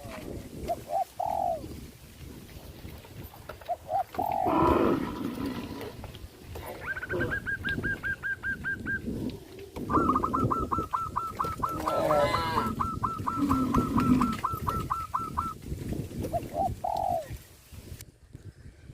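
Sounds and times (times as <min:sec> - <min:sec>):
birds calling: 0:00.0 - 0:01.7, 0:03.5 - 0:05.8, 0:06.5 - 0:15.6, 0:16.2 - 0:17.4.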